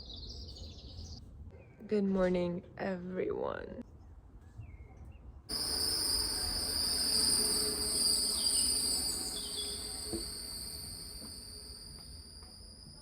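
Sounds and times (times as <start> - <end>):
crickets trilling: 5.5 - 13.0
faint short chirps: 5.5 - 13.0.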